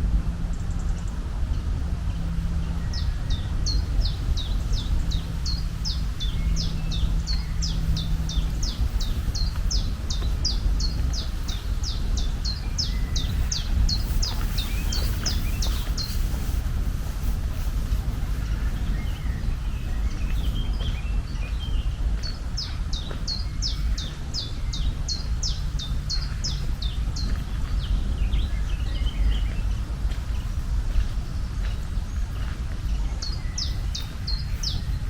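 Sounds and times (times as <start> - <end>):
low outdoor rumble: 0.0 - 35.0
bird chirping: 2.1 - 35.0.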